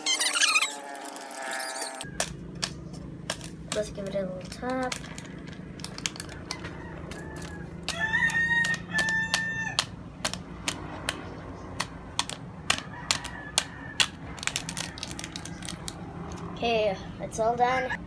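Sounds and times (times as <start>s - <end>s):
light taps on sachets: 2.2s - 11.2s, 11.8s - 16.5s.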